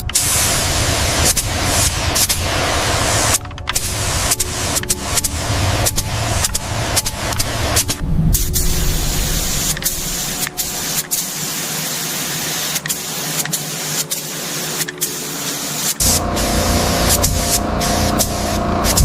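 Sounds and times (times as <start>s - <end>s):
hissing spray: 0.0s - 19.0s
low rumble: 2.5s - 10.9s, 16.0s - 19.0s.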